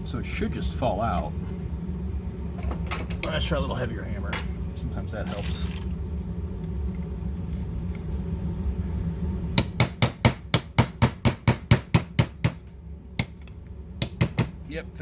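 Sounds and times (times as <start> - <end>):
hammer tapping metal punch: 9.6 - 14.7.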